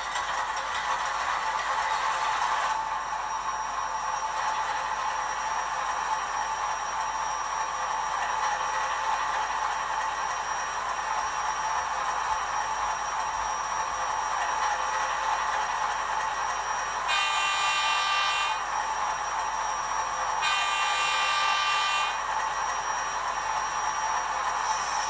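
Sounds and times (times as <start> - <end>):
train horn: 17.1 - 18.6, 20.4 - 22.2.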